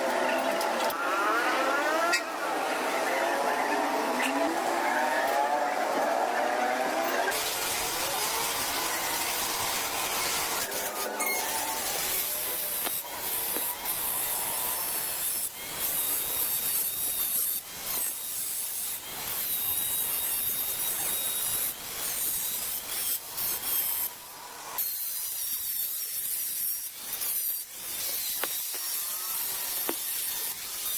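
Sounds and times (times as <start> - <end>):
tools scraping on metal: 10.2 - 14.4.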